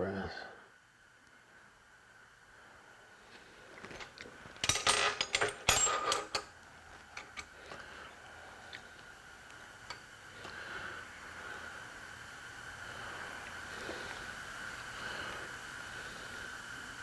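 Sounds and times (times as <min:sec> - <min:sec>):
metal parts clinking and clattering: 0:03.8 - 0:06.5, 0:07.1 - 0:07.6.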